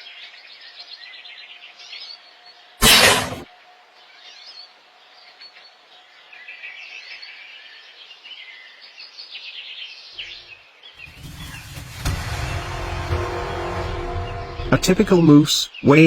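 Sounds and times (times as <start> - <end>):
faint outdoor background noise: 0.0 - 11.2.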